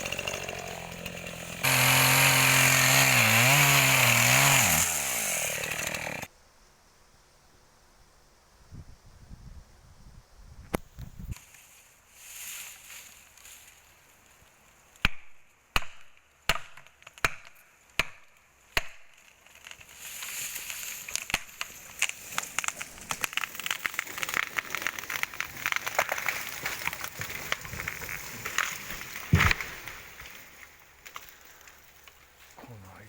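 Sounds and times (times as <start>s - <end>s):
tree hitting the ground: 0.0s - 6.2s, 19.5s - 32.8s
sharp blows on wood: 1.6s - 6.3s
wood cracking and snapping: 18.8s - 32.6s.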